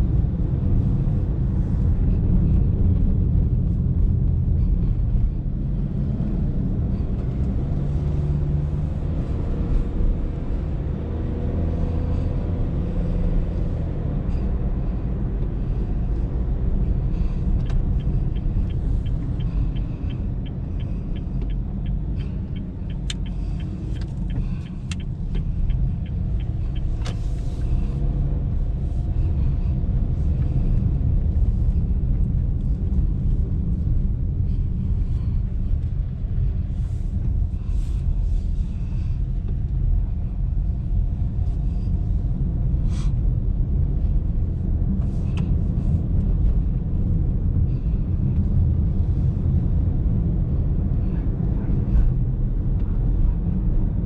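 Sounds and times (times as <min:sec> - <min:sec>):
car road and engine rumble: 0:00.0 - 0:54.0
light regular ticking: 0:17.4 - 0:27.8.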